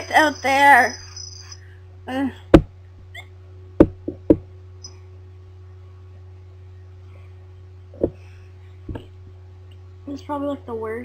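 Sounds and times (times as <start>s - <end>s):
faint cricket chirp: 0.0s - 1.8s
steady low hum: 0.0s - 11.0s.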